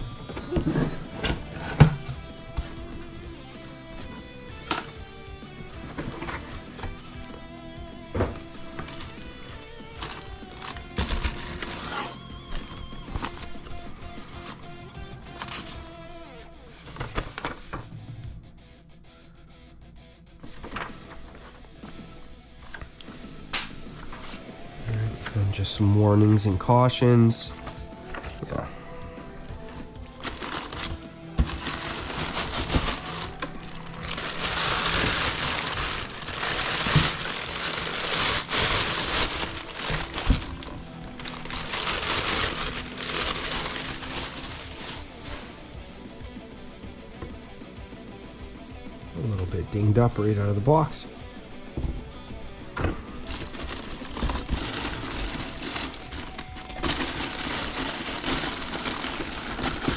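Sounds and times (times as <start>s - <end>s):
quiet background music: 0.0s - 59.9s
packaging crinkling: 5.9s - 7.4s, 8.1s - 15.8s, 16.7s - 17.9s, 20.4s - 21.6s, 24.0s - 45.6s, 52.8s - 59.9s.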